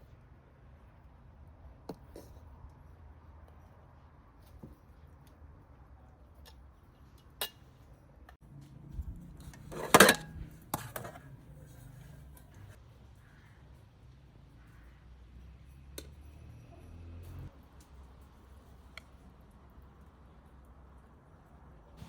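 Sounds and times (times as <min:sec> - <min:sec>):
cookware clinking and knocking: 0:09.7 - 0:11.3.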